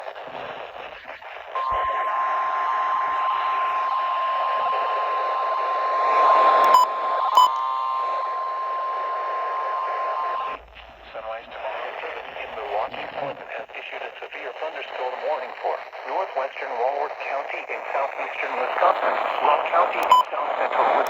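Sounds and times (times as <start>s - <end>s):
radio static: 0.0s - 21.0s
steady single alarm tone: 1.6s - 10.5s.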